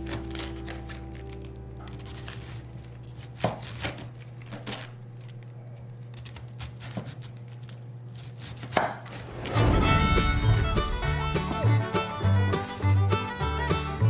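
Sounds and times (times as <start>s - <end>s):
steady low hum: 0.0s - 6.1s, 9.1s - 14.0s
knife chopping on cutting board: 8.4s - 9.1s.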